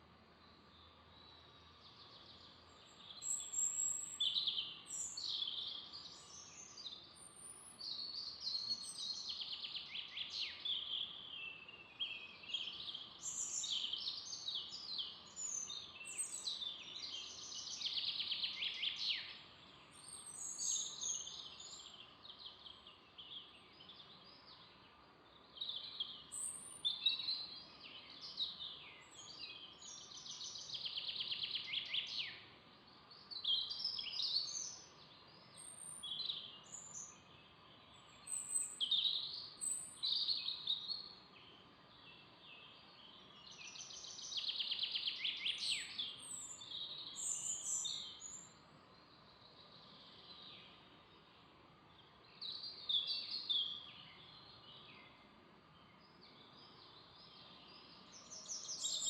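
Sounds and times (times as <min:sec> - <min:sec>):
faint background noise: 0:00.0 - 0:59.0
songbirds chirping and trilling: 0:00.0 - 0:59.0.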